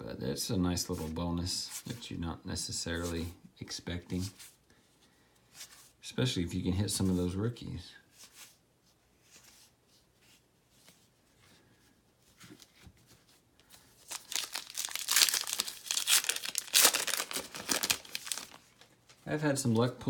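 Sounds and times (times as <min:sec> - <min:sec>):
wrapper crinkling and tearing: 0:14.0 - 0:19.0.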